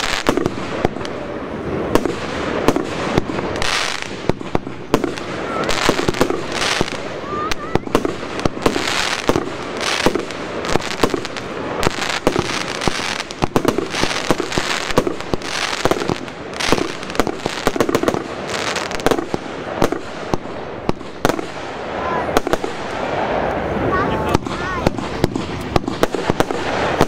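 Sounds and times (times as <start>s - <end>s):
firework bangs and crackling: 0.0s - 27.0s
firework launch whoosh: 1.8s - 27.0s.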